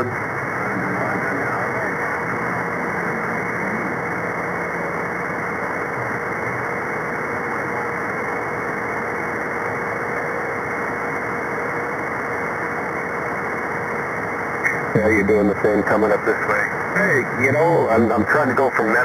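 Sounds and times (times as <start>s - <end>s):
radio static hiss: 0.0s - 19.0s
faint unreadable voice: 14.7s - 19.0s.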